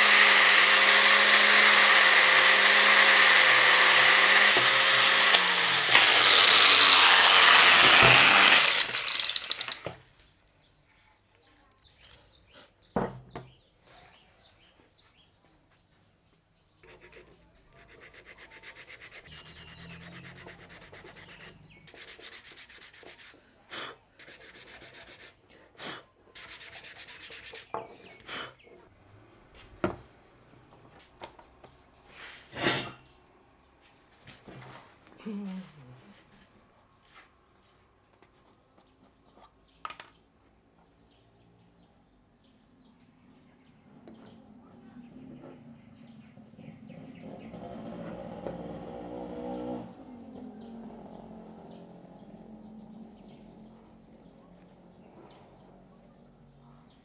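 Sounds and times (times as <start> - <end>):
electric power tool running: 0.0 - 10.0
hand rubbing on wood: 16.8 - 23.4, 24.2 - 25.4, 26.4 - 27.7, 51.0 - 57.0.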